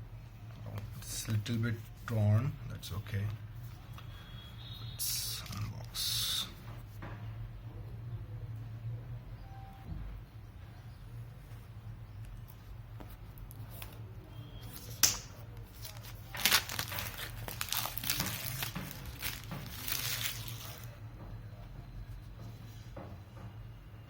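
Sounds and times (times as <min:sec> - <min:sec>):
packaging tearing and crinkling: 0:15.7 - 0:20.9.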